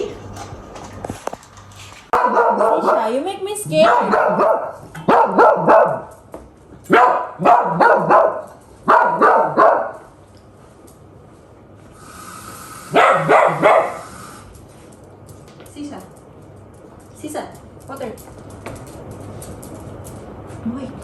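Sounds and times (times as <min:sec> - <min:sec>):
dog barking: 0:02.1 - 0:03.2, 0:03.8 - 0:06.1, 0:06.9 - 0:10.1, 0:12.9 - 0:14.1.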